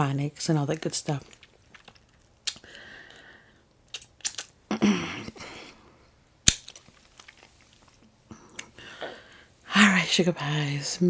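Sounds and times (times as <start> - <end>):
rustling: 5.3 - 9.0.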